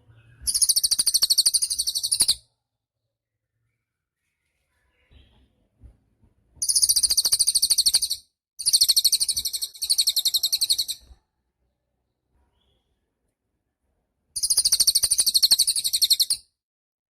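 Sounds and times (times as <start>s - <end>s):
songbird trilling: 0.5s - 2.4s, 6.6s - 11.1s, 14.4s - 16.4s.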